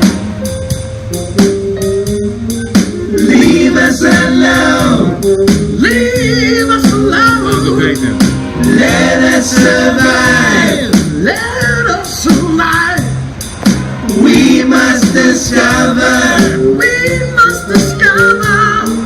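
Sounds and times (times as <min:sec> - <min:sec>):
instrumental accompaniment: 0:00.0 - 0:19.0
repeated low bass notes: 0:00.0 - 0:19.0
group singing: 0:03.1 - 0:11.3, 0:14.0 - 0:19.0.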